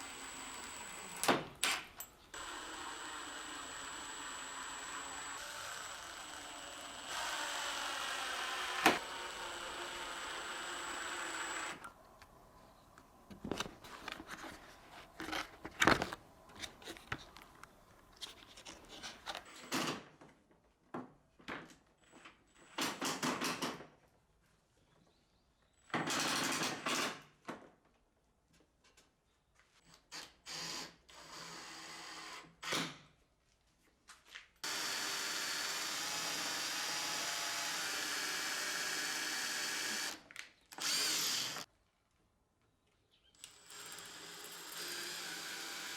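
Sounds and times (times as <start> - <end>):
power drill running: 0.0 - 1.7, 2.3 - 12.0, 34.6 - 41.7, 43.4 - 45.9.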